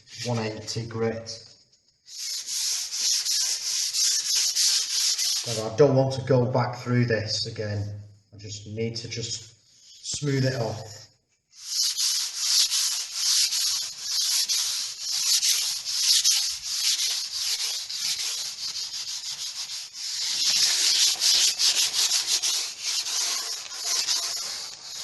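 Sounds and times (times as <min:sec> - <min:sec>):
sandpaper rubbing by hand: 0:02.1 - 0:05.8, 0:11.6 - 0:25.0.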